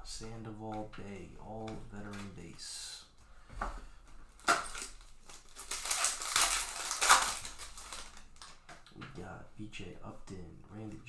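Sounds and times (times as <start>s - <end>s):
foil wrapper crinkling: 4.3s - 8.7s.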